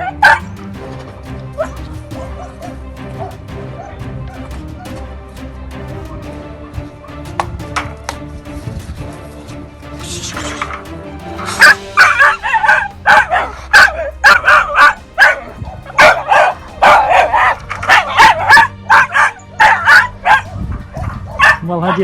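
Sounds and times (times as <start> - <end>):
dog barking rapidly: 0.0 - 0.5, 1.6 - 4.9, 11.4 - 22.0.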